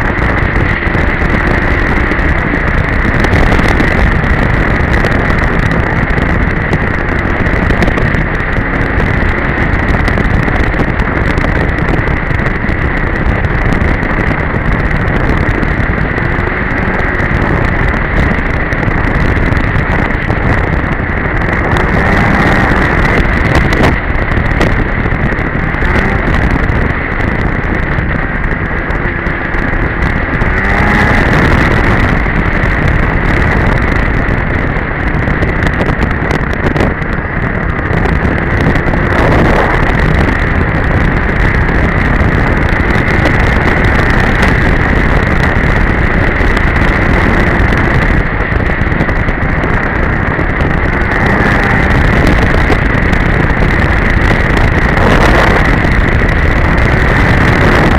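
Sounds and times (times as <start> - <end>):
snowmobile engine running: 0.0 - 57.9
wind rushing over microphone: 0.0 - 57.9.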